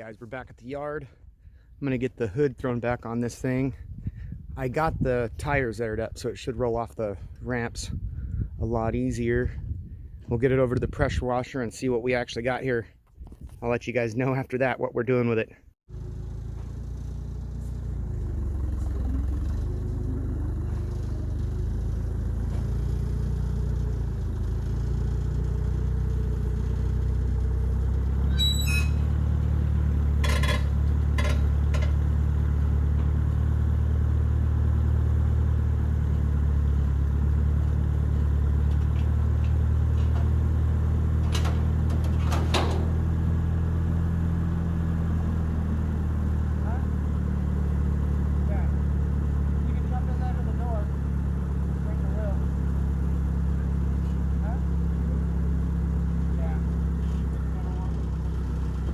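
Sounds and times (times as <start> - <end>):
vehicle engine running at low speed: 0.0 - 11.6, 15.9 - 58.9
metallic clicks and clanks: 30.2 - 32.0.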